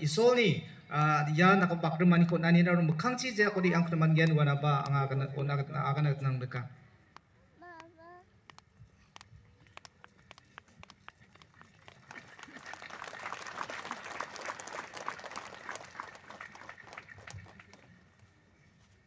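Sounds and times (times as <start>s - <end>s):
congregation applauding: 11.8s - 18.0s.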